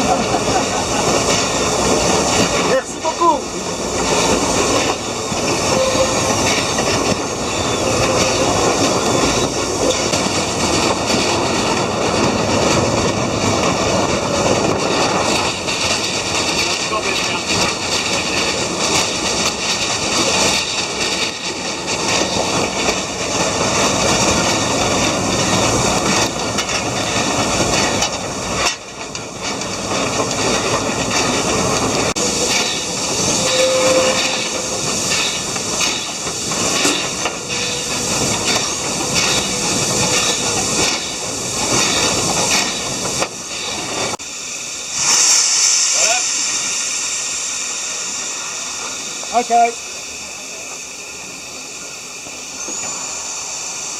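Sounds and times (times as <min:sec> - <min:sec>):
moving train: 0:00.0 - 0:53.9
steam hissing: 0:00.0 - 0:53.9.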